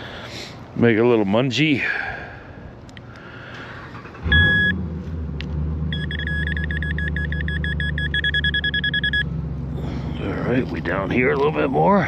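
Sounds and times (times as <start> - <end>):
low vehicle engine rumble: 0.0 - 12.0
metal detector beeping: 4.3 - 4.8, 5.9 - 9.3.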